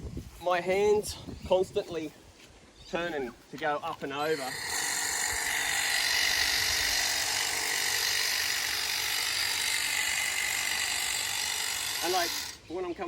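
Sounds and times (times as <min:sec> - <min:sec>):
hedge trimmer high whine: 0:04.2 - 0:12.6.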